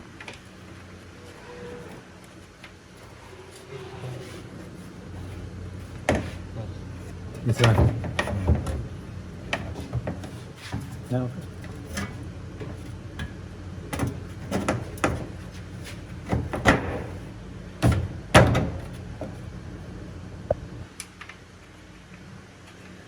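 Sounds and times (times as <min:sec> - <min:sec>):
steady low hum: 0:00.0 - 0:23.0
hard clunks and knocks: 0:05.9 - 0:06.7, 0:07.3 - 0:19.4.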